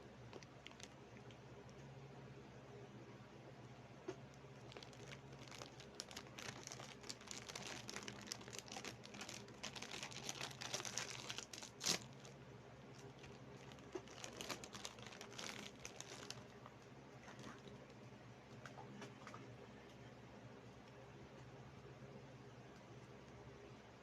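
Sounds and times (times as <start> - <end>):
plastic wrapper crinkling: 0.3 - 1.0, 4.6 - 16.8.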